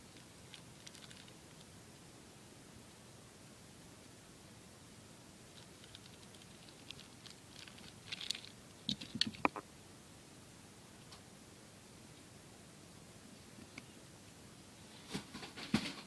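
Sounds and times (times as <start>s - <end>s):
plastic toy parts clicking: 0.5s - 1.3s, 5.8s - 9.6s.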